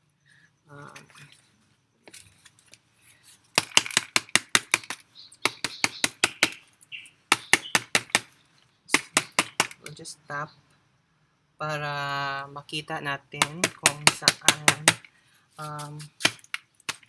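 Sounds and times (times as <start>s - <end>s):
tapping on plant pot: 3.6s - 6.6s, 7.3s - 8.3s, 9.0s - 10.0s, 13.4s - 15.1s, 15.7s - 17.0s.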